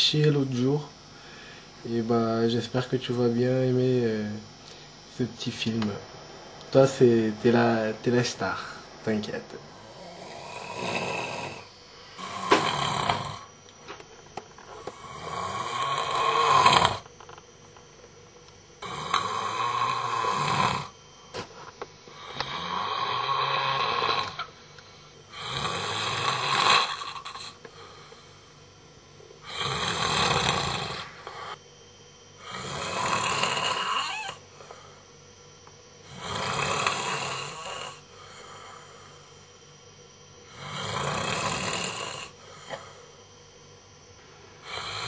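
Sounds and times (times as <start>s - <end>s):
man snoring: 9.8s - 13.5s, 14.8s - 17.1s, 18.8s - 21.0s, 22.1s - 24.5s, 25.3s - 28.4s, 29.4s - 31.6s, 32.4s - 34.8s, 36.0s - 39.3s, 40.4s - 43.1s, 44.6s - 45.0s.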